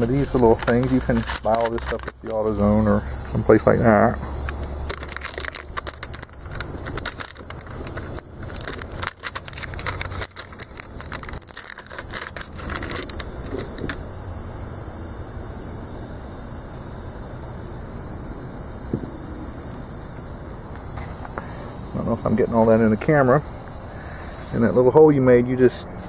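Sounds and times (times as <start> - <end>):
air hissing from tire: 0.0 - 14.1, 17.7 - 25.1
hands handling repair kit: 0.1 - 2.5, 4.4 - 14.0.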